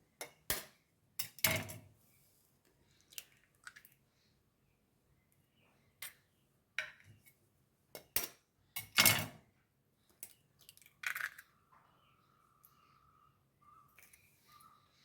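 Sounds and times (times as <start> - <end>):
eggs cracking against a bowl: 10.1 - 11.6.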